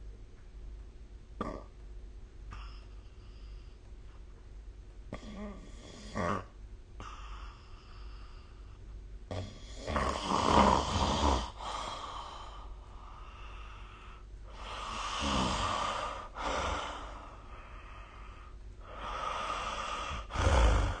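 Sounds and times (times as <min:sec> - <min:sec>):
quiet breaths: 0:02.4 - 0:21.0
person snoring: 0:05.1 - 0:07.7, 0:09.3 - 0:21.0.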